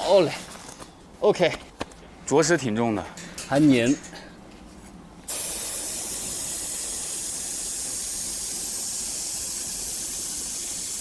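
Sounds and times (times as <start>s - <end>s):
paint spray hiss: 5.3s - 11.0s.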